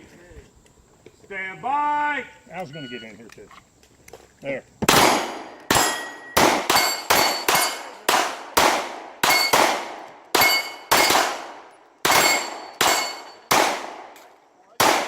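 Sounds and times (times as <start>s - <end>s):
pistol shots: 4.9s - 15.0s
steel plate ringing clang: 5.2s - 8.0s, 9.2s - 9.6s, 10.4s - 11.2s, 12.1s - 13.5s.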